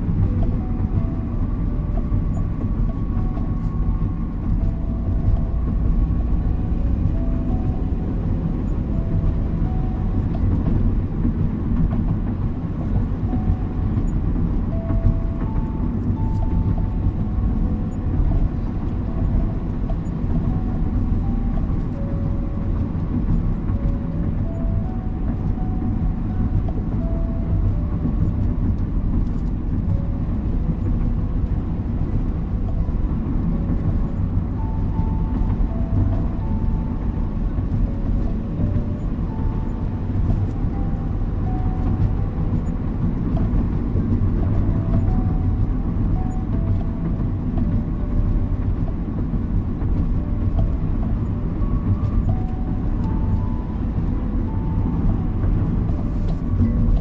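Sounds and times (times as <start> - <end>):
car road and engine rumble: 0.0 - 57.0
soft slow melody: 0.0 - 57.0.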